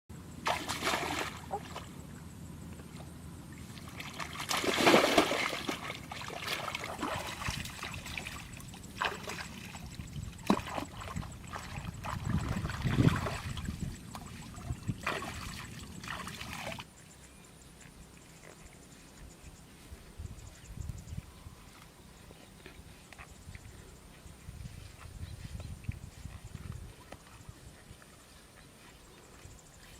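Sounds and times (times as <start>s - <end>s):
water splashing and trickling: 0.4s - 1.8s, 2.9s - 16.9s.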